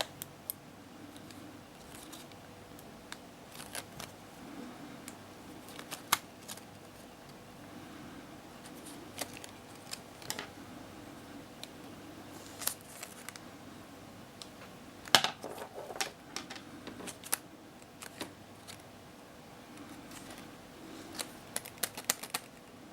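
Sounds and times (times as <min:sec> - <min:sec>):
faint steady hum: 0:00.0 - 0:22.9.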